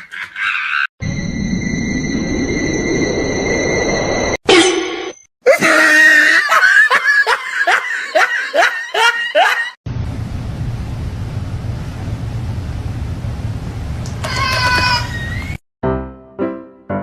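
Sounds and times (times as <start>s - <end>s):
steady low hum: 9.9s - 14.1s
falling squeal: 14.3s - 15.6s.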